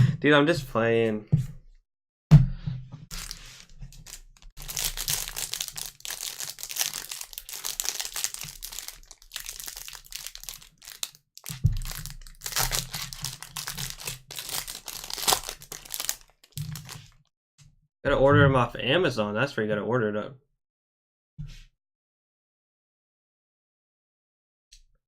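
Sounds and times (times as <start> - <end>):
plastic wrappers crinkling and tearing: 3.1 - 17.2.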